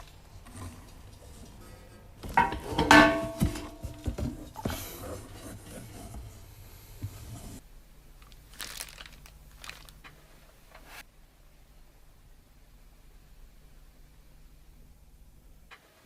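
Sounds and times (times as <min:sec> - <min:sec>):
packaging crinkling: 0:08.2 - 0:11.0.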